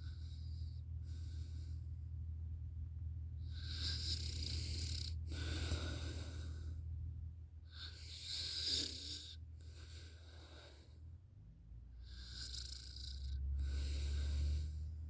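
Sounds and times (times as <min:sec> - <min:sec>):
steady low hum: 0:00.0 - 0:15.0
person snoring: 0:12.1 - 0:14.9.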